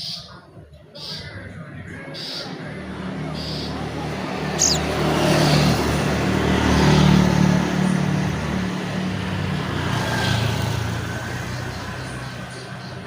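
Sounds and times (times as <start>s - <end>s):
vehicle engine passing by: 2.6s - 11.4s
short high chirp: 4.6s - 4.9s.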